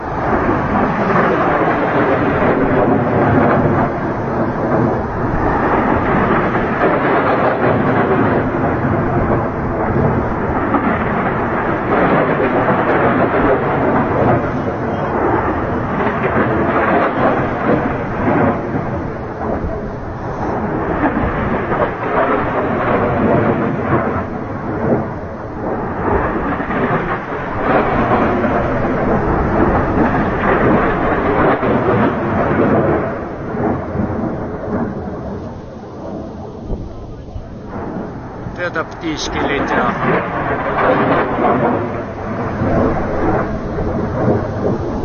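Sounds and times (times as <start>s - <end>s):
rocket launch roar: 0.0s - 45.0s.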